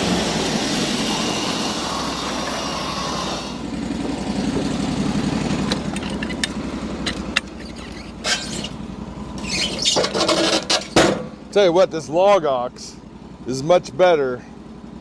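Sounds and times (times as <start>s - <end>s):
broad hiss: 0.0s - 3.7s
sawmill gas engine running: 0.0s - 15.0s.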